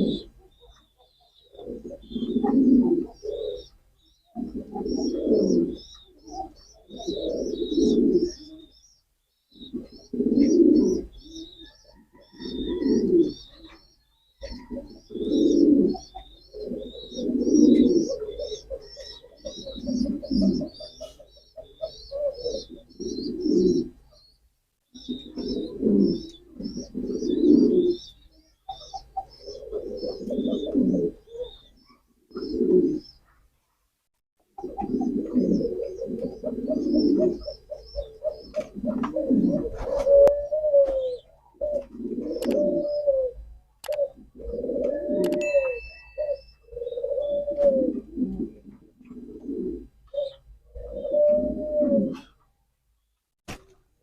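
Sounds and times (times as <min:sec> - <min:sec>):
pigeons cooing: 0:00.0 - 0:24.3, 0:25.0 - 0:33.4, 0:34.5 - 0:52.5.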